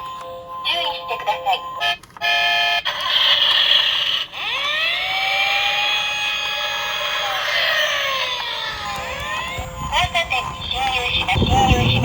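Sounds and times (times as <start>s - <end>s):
siren winding up: 2.2s - 12.0s
synthetic-sounding voice: 7.0s - 12.0s.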